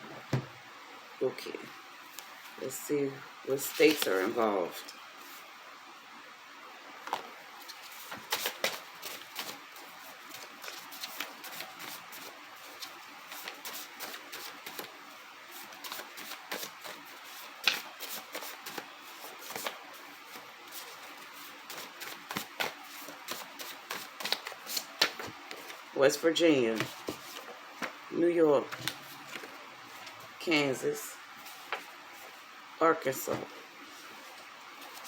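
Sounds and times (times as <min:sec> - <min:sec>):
playing cards being shuffled: 0:03.6 - 0:04.4, 0:07.6 - 0:14.9, 0:15.5 - 0:25.8, 0:26.7 - 0:28.0, 0:34.0 - 0:35.0.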